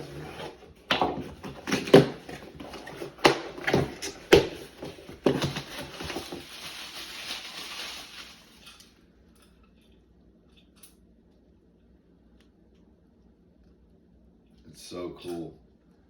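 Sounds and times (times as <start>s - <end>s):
packaging rustling: 0.0s - 9.0s
packaging crackling and knocking: 0.8s - 8.8s.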